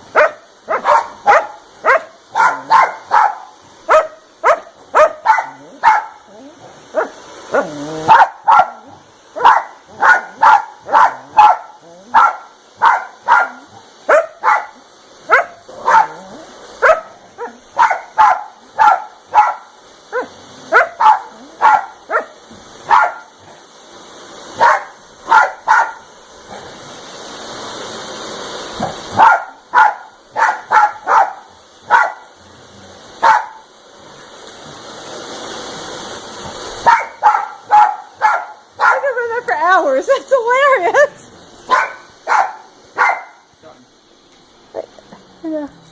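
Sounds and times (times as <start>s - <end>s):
dog barking: 0.1s - 23.4s, 24.6s - 26.1s, 28.8s - 32.4s, 33.2s - 33.7s, 36.8s - 39.2s, 41.7s - 43.5s.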